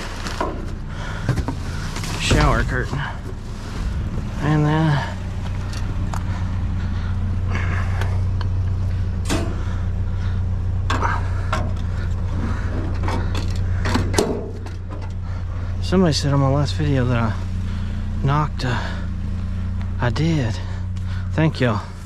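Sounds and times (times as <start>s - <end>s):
junk clattering and scraping: 0.0s - 15.8s
low engine hum: 0.0s - 22.0s.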